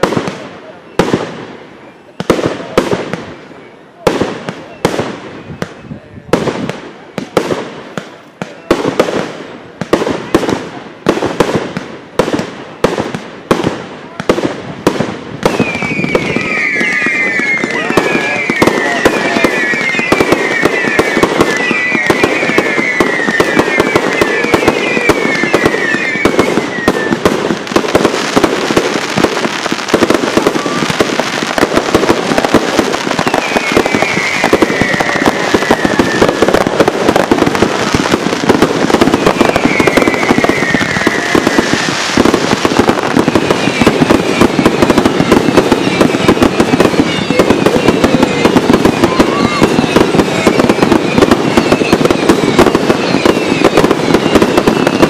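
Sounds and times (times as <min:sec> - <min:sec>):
fireworks cracking: 0:00.0 - 0:55.0
fireworks falling whistles: 0:00.0 - 0:55.0.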